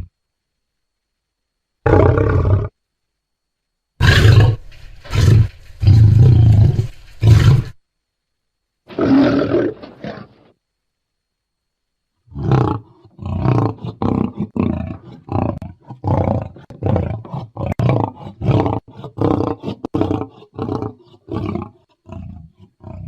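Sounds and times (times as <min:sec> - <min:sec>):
lion roaring grunts: 0:12.3 - 0:23.0.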